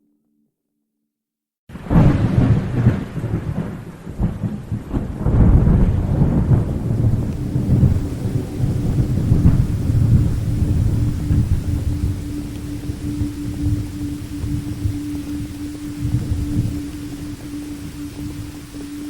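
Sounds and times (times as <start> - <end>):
heavy rain: 1.7 - 19.0
rolling thunder: 1.7 - 19.0
steady low tone: 5.2 - 19.0.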